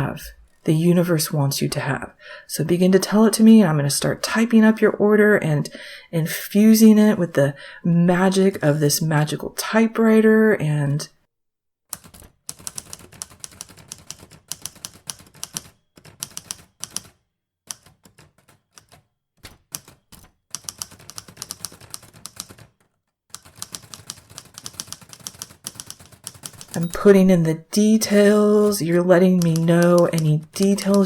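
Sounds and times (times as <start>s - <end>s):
typewriter keys clicking: 12.0s - 22.8s, 23.4s - 26.9s, 28.2s - 31.0s.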